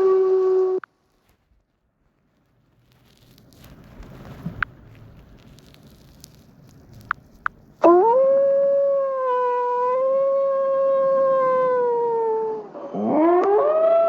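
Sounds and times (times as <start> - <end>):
canid howling: 7.8 - 14.0.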